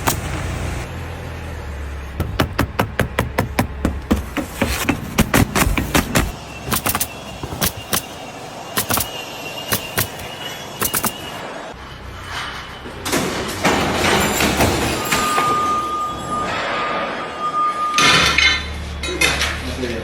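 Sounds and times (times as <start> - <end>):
construction knocks and clanks: 2.2 - 8.2, 8.8 - 17.2.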